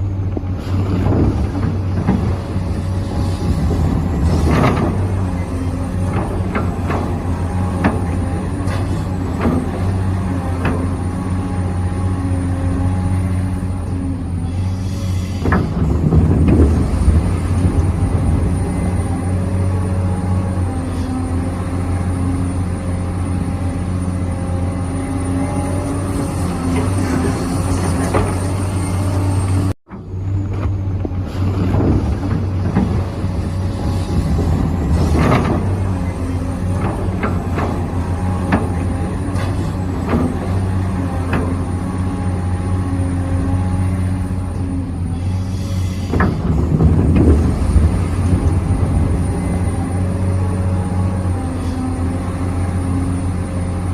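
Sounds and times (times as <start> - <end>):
hydraulic pump hum and whine: 0.0 - 53.9
model excavator knocks and scrapes: 0.4 - 11.2, 15.4 - 19.0, 29.9 - 41.8, 46.0 - 49.8.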